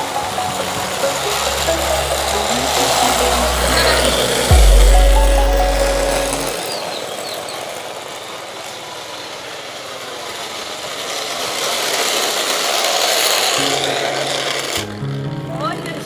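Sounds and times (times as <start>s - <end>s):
steel wheels rolling over pavement: 0.0s - 16.0s
music with low bass line: 1.7s - 6.6s.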